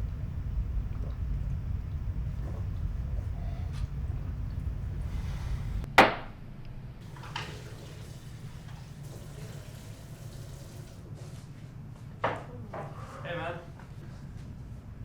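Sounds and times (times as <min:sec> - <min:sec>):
low rumbling snoring: 0:00.0 - 0:05.9.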